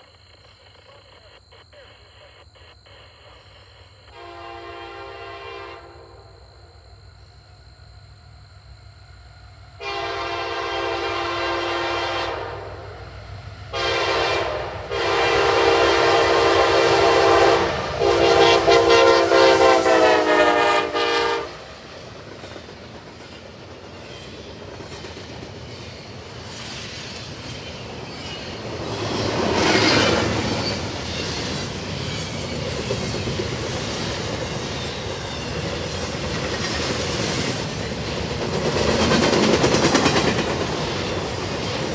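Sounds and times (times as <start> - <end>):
locomotive air horn: 4.1 - 6.4, 9.8 - 12.9, 13.7 - 21.7
train wheels clattering on rails: 21.5 - 41.9.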